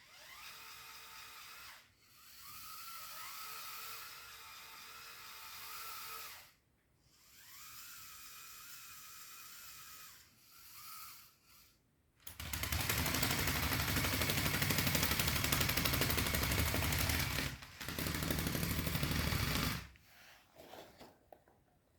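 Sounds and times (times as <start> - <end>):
rapid plastic drivetrain rattle: 12.3 - 19.9.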